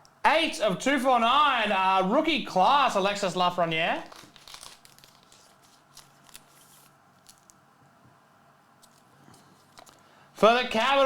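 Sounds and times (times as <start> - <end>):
trading cards clicking and rustling: 4.0 - 7.6.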